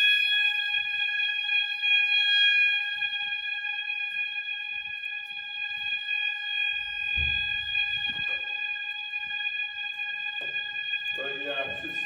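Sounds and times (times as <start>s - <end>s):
low thump: 7.2s - 8.4s
fire alarm horn tone: 10.4s - 12.0s.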